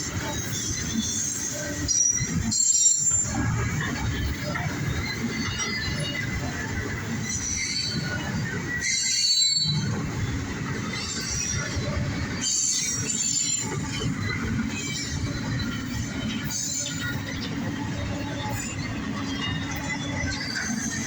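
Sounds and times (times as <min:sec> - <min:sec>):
freight train rolling past: 0:00.0 - 0:21.0
high wheel squeals: 0:00.2 - 0:21.0.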